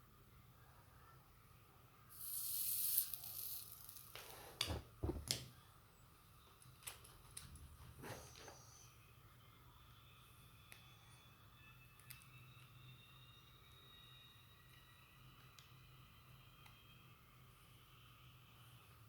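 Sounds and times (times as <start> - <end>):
soldering iron sizzling hiss: 2.1 - 4.7.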